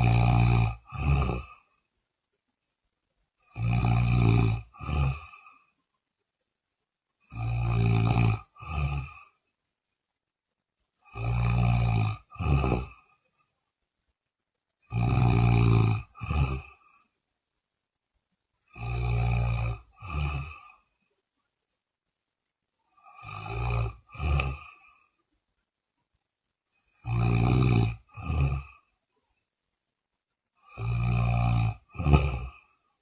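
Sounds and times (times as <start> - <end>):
person snoring: 0.0 - 1.8, 3.4 - 5.8, 7.2 - 9.4, 11.0 - 13.5, 14.8 - 17.1, 18.6 - 21.0, 22.9 - 25.2, 26.8 - 29.0, 30.6 - 33.0.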